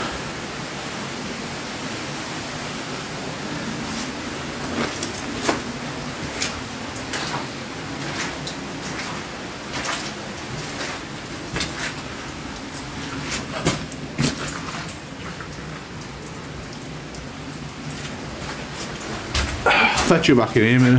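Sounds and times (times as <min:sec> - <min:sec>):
steady rushing noise: 0:00.0 - 0:12.6.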